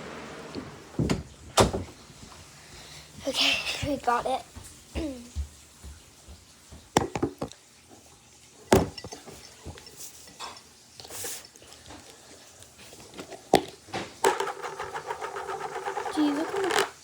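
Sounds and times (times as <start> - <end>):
small objects knocking and clinking: 13.2 - 17.0.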